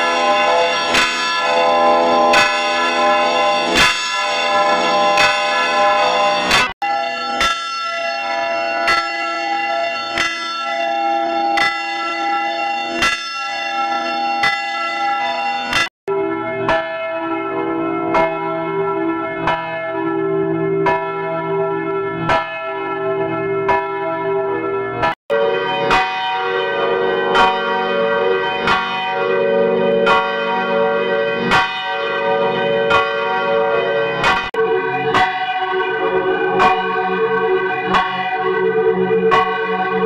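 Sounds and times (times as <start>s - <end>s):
church bell tolling: 0.0s - 40.0s.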